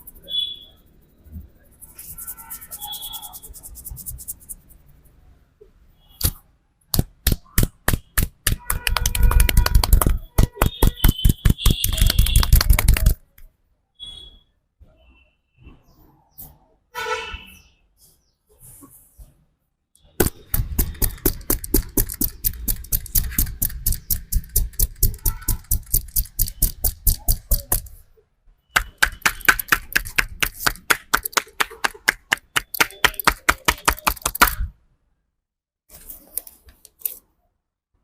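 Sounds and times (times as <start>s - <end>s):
hands slapping in massage: 6.2s - 13.2s, 20.2s - 27.9s, 28.8s - 34.7s.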